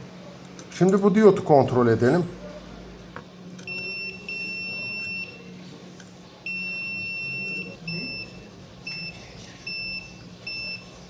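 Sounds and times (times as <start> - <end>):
multimeter continuity beeps: 3.6 - 5.6, 6.4 - 11.0.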